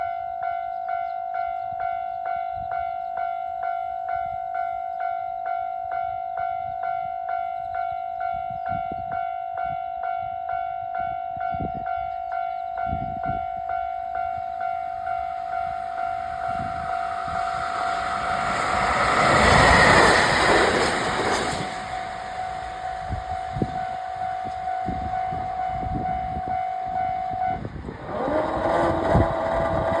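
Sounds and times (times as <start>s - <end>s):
electric train passing: 11.9s - 30.0s.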